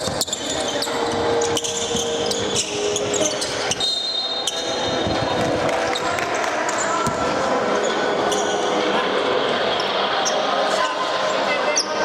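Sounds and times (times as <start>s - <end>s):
shoe squeaks: 0.0s - 6.1s, 7.7s - 8.8s
basketball bouncing on court: 7.0s - 7.3s.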